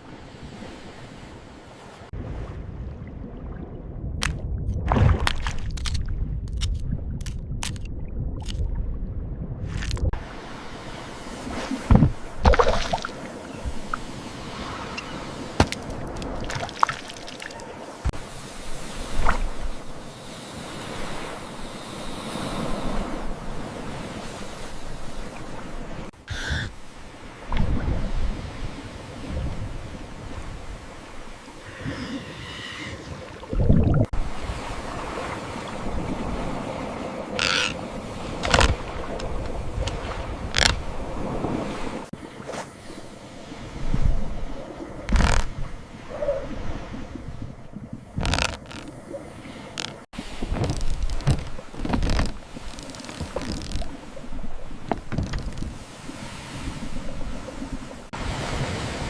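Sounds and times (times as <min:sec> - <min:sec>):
water sloshing and splashing: 0:00.0 - 0:09.0, 0:09.6 - 0:20.0, 0:33.0 - 0:58.9
floodwater: 0:00.0 - 0:59.0
wind: 0:00.0 - 0:59.0.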